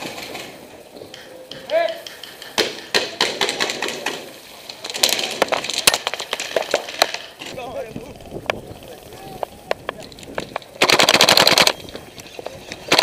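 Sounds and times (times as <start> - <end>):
airsoft guns firing: 2.0 - 7.3, 10.8 - 11.8.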